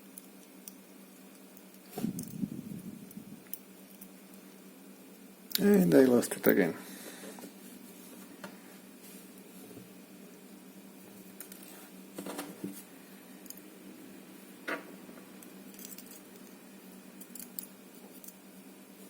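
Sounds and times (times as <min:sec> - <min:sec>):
steady low hum: 0:00.0 - 0:19.0
small metallic clicks of lock parts: 0:17.2 - 0:18.4.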